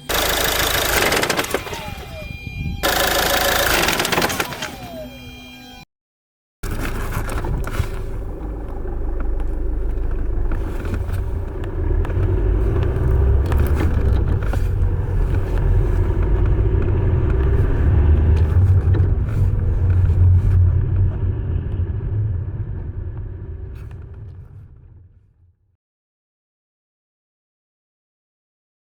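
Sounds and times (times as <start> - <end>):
car engine rumbling with rattle: 0.0 - 4.6, 6.6 - 25.2.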